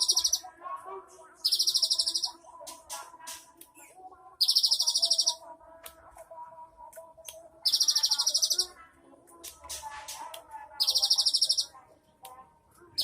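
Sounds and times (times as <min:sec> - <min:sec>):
bird chirps and calls: 0:00.0 - 0:00.5, 0:01.4 - 0:02.4, 0:03.8 - 0:05.4, 0:07.7 - 0:08.7, 0:10.8 - 0:11.8
bird high trill: 0:00.0 - 0:00.5, 0:01.4 - 0:02.4, 0:04.4 - 0:05.4, 0:07.7 - 0:08.7, 0:10.8 - 0:11.7.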